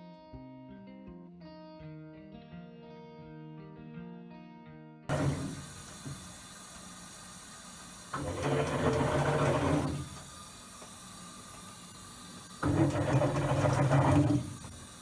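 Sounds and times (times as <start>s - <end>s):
washing machine churning water: 5.1s - 15.0s.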